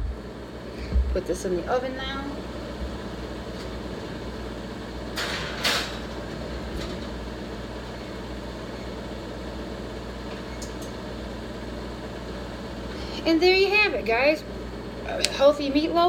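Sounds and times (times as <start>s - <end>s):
low kitchen hum: 0.0s - 16.0s
pan clattering into oven: 5.2s - 6.2s.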